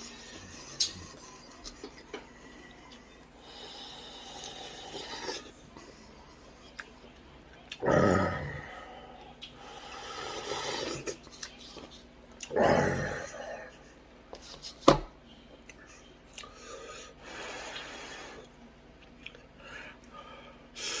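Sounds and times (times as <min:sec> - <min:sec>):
slurping and chewing: 0:00.0 - 0:07.0, 0:09.4 - 0:12.6.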